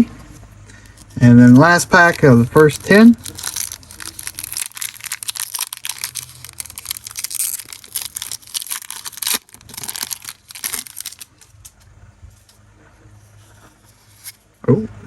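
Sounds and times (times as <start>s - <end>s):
foil wrapper tearing and crinkling: 1.5s - 11.7s.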